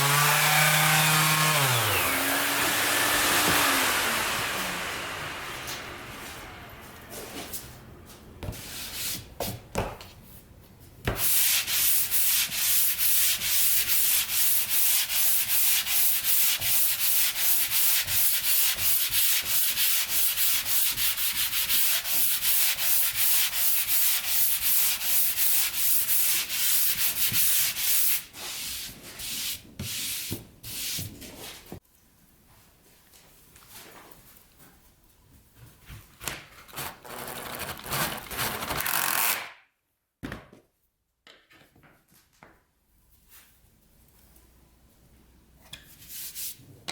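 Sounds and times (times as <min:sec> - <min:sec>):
hand sanding wood: 0:00.0 - 0:07.6, 0:11.1 - 0:31.1
knocks and handling noises: 0:09.2 - 0:11.2.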